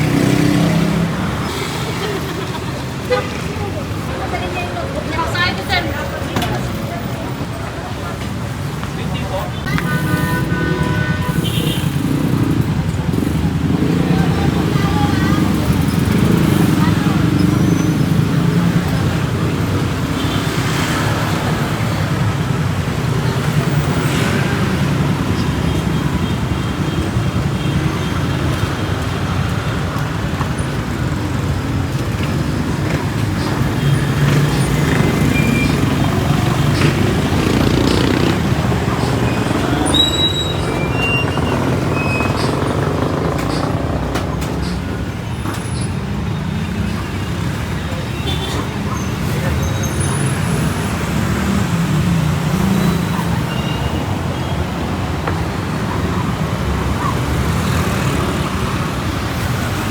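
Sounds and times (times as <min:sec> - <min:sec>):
vehicle engines rumbling: 0:00.0 - 0:59.9
brief high squeaks: 0:39.3 - 0:43.2.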